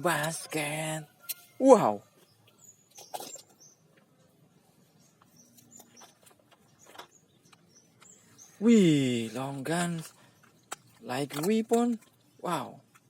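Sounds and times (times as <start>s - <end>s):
faint clicks and rustles: 2.2s - 8.6s.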